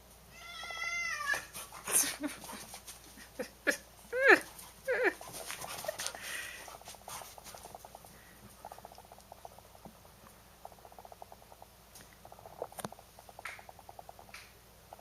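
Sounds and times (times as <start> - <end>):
rapid soft pattering: 4.2 - 15.0.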